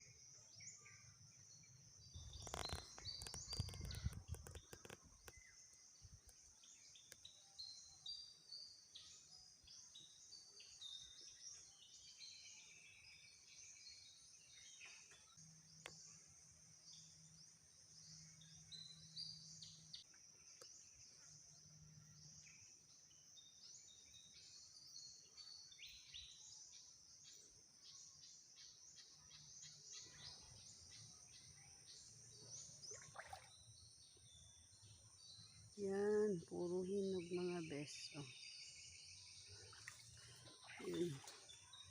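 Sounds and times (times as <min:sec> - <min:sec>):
birds chirping: 0:01.6 - 0:08.8, 0:23.8 - 0:41.9.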